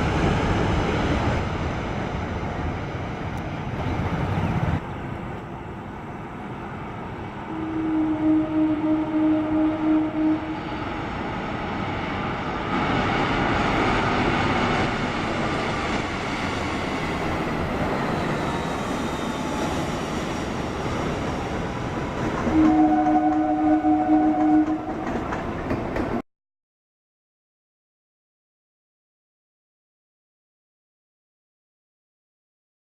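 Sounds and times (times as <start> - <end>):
horn sounding a held chord: 7.5 - 10.8, 22.5 - 25.0.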